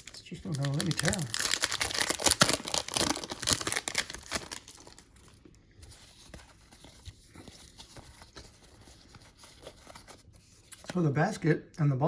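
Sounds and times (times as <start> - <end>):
wrapper crinkling and tearing: 0.0 - 5.4.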